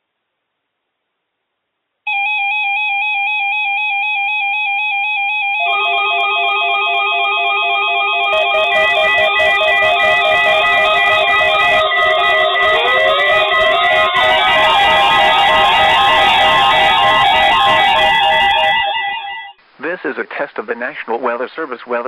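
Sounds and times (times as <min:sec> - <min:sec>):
alarm tone: 0:02.1 - 0:19.6
warbling electronic alarm: 0:02.1 - 0:19.6.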